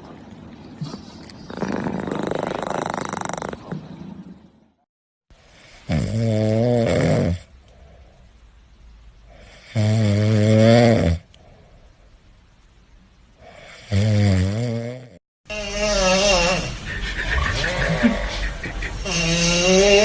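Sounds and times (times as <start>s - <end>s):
cat snoring: 1.5s - 3.7s.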